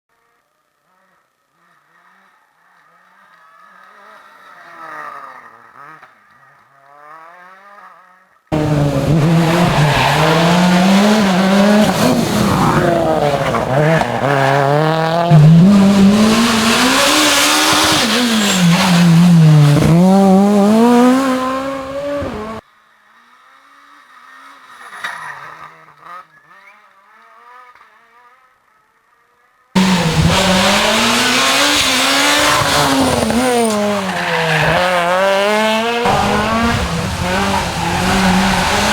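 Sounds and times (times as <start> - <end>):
rally car engine revving: 0.1 - 22.6, 29.7 - 38.9
distant car passing: 8.5 - 22.6, 29.8 - 38.9.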